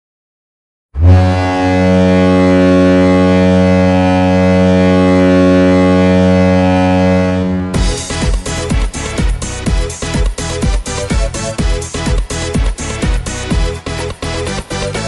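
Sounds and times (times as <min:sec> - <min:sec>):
deep goal horn blast: 0:01.0 - 0:11.6.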